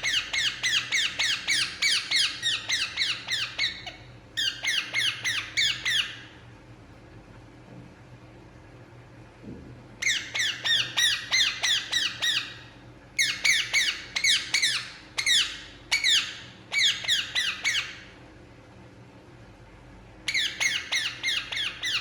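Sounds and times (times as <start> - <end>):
parakeet shrill calls: 0.0 - 6.3, 10.0 - 18.1, 20.3 - 22.0.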